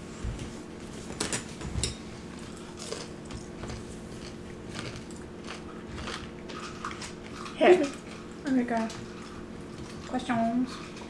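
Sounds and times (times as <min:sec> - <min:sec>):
crunchy chewing of fried food: 0:02.2 - 0:11.0.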